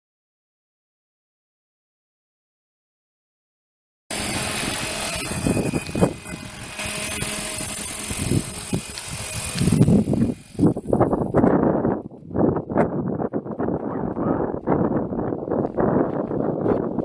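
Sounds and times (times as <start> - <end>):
model helicopter mechanical hiss: 4.1 - 11.3.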